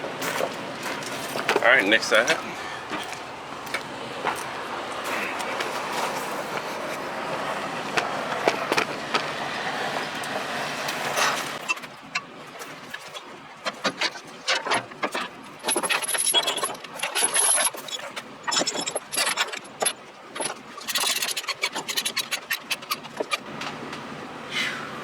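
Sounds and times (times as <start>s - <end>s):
metal chains clinking and rattling: 15.6s - 22.5s.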